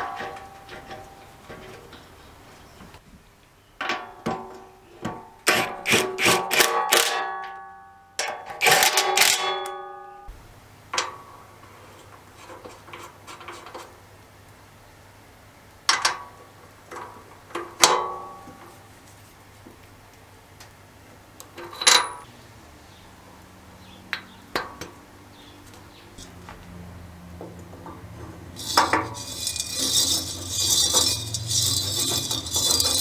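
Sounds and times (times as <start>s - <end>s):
metal tools clinking: 21.7s - 22.3s, 28.6s - 33.0s.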